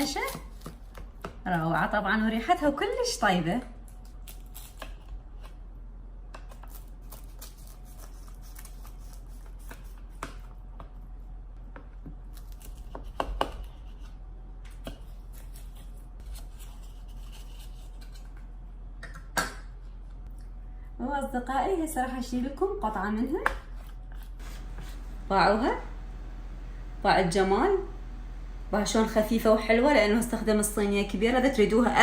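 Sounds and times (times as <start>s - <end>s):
knife cutting crisp pastry: 6.4s - 10.5s, 12.2s - 14.1s, 14.7s - 18.4s.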